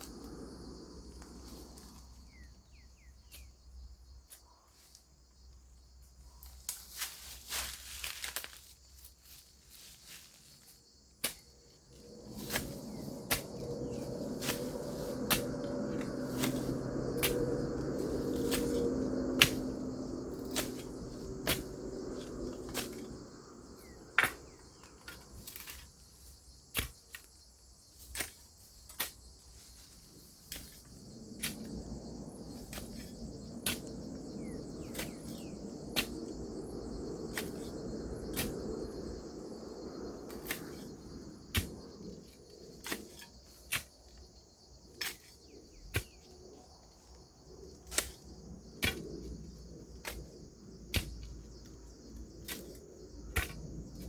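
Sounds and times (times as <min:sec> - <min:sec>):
insect chorus: 0:00.0 - 0:54.0
hand tool chopping soil: 0:11.2 - 0:11.5, 0:12.3 - 0:13.7, 0:19.4 - 0:19.8, 0:20.4 - 0:23.1, 0:23.8 - 0:25.9, 0:26.7 - 0:27.3, 0:28.0 - 0:29.2, 0:34.8 - 0:36.2, 0:40.3 - 0:40.9, 0:42.8 - 0:44.0, 0:45.0 - 0:46.3, 0:47.8 - 0:51.6, 0:52.4 - 0:54.0.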